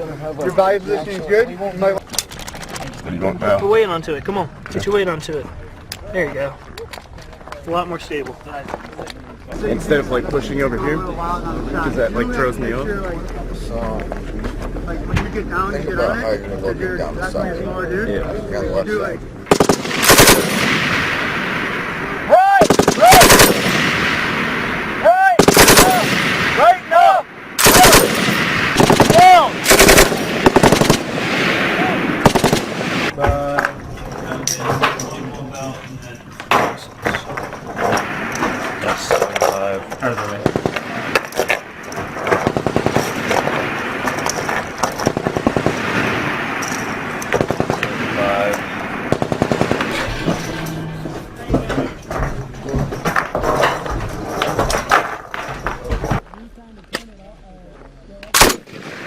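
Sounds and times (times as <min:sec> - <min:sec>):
machine gun firing bursts: 0:19.5 - 0:21.0, 0:22.6 - 0:24.0, 0:25.4 - 0:26.4, 0:27.6 - 0:31.4, 0:32.2 - 0:33.1, 0:40.4 - 0:41.1, 0:42.2 - 0:43.6, 0:45.0 - 0:46.1, 0:47.3 - 0:47.9, 0:49.1 - 0:50.1
gunshot echo: 0:19.5 - 0:24.7
gunshots: 0:19.5 - 0:26.9, 0:27.6 - 0:33.1, 0:40.3 - 0:50.5, 0:58.3 - 0:59.0.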